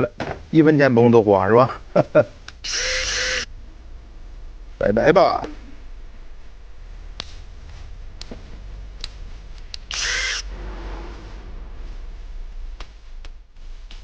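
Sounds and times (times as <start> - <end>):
steady low hum: 0.0 - 14.0
loud burst of noise: 1.8 - 4.8, 9.9 - 13.8.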